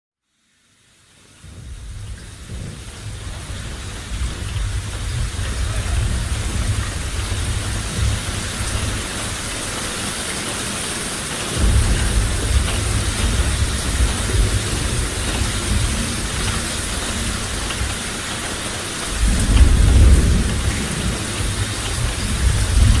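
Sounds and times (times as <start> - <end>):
rain hiss: 0.3 - 23.0
deep low rumble: 1.5 - 9.1, 11.6 - 17.5.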